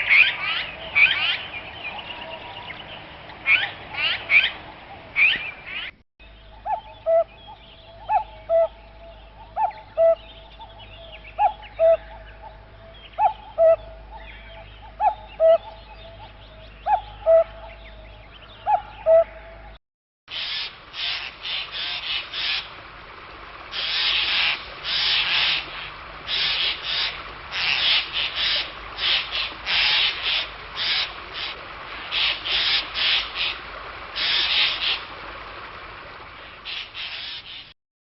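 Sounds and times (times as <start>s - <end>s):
bird scratchy calls: 0.0s - 1.5s, 3.4s - 4.6s, 20.3s - 22.7s, 23.7s - 33.6s, 34.2s - 35.1s, 36.6s - 37.7s.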